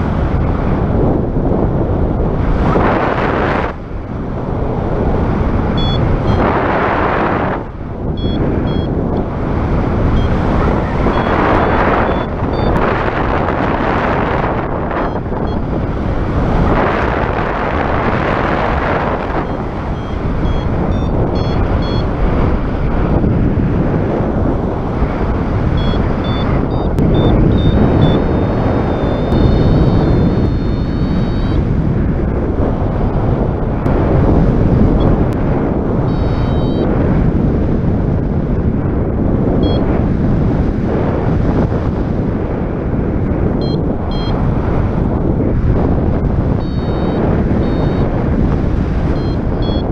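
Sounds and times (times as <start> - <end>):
wind buffeting microphone: 0.0 - 49.9
faint high-pitched beeps: 5.8 - 6.6, 8.2 - 9.0, 10.1 - 12.8, 15.0 - 15.7, 19.3 - 22.1, 25.8 - 31.6, 36.1 - 36.9, 39.6 - 39.9, 43.6 - 44.4, 46.6 - 48.1, 49.1 - 49.9.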